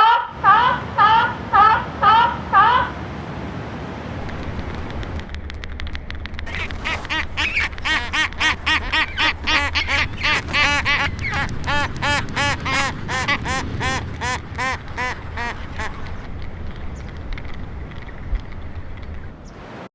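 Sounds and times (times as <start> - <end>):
steady low rumble: 1.5 - 19.5
bird giving rapid short calls: 6.5 - 16.1.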